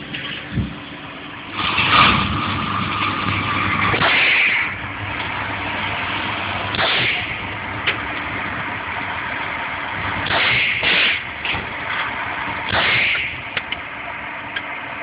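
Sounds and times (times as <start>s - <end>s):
loud gunshots: 3.9s - 4.7s, 6.7s - 7.4s, 10.2s - 11.3s, 12.7s - 13.4s
sharp gunshot cracks: 3.9s - 4.7s, 6.7s - 7.4s, 10.2s - 11.3s, 12.7s - 13.4s.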